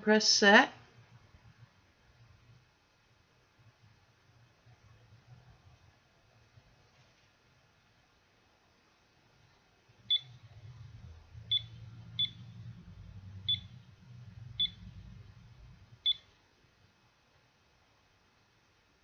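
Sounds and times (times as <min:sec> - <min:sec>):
alarm clock short high beeps: 0:10.1 - 0:10.4, 0:11.5 - 0:12.5, 0:13.5 - 0:13.7, 0:14.6 - 0:14.8.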